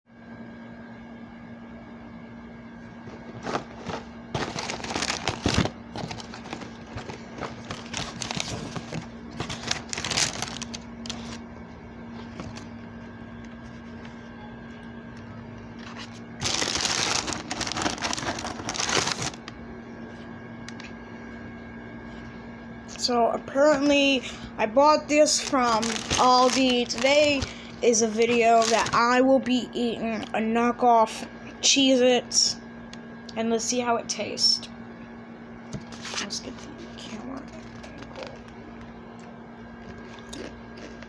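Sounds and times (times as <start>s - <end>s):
faint electrical hum: 0.1s - 41.0s
snack packaging crinkling: 3.4s - 11.4s, 15.8s - 19.6s, 25.2s - 29.2s.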